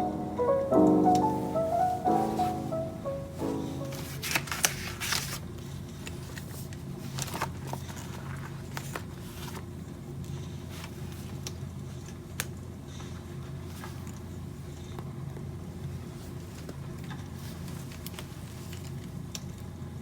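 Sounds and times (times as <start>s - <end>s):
stationery rustling: 0.0s - 5.4s.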